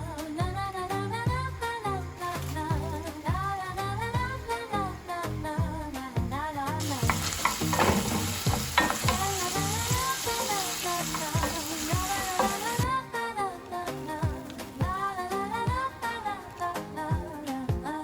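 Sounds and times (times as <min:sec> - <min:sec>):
vegetables sizzling in oil: 0:06.8 - 0:12.9.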